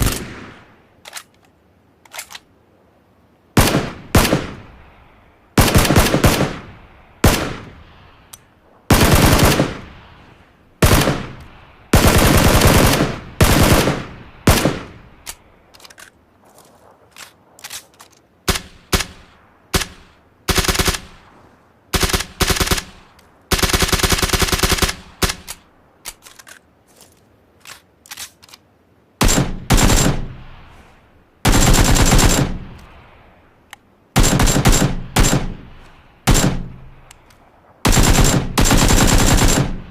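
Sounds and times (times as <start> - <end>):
gunshots: 0.0 - 0.7, 3.6 - 4.7, 5.6 - 7.8, 8.9 - 10.0, 10.8 - 15.2, 18.5 - 21.3, 21.9 - 25.6, 29.2 - 30.7, 31.4 - 32.8, 34.2 - 37.1, 37.8 - 39.9
automatic gunfire bursts: 5.6 - 7.6, 8.9 - 9.9, 10.8 - 15.0, 18.5 - 21.2, 21.9 - 25.6, 29.2 - 30.4, 31.5 - 32.7, 34.2 - 36.9, 37.8 - 39.9.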